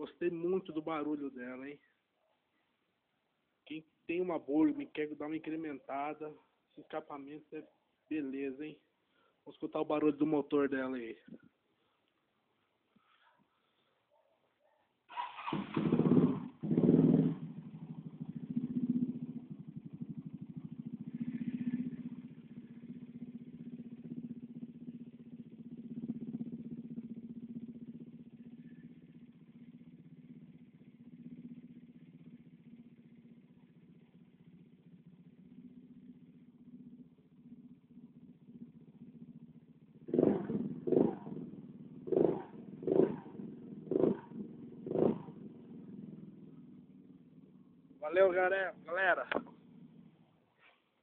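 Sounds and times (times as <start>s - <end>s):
scooter engine revving and idling: 15.1s - 50.4s.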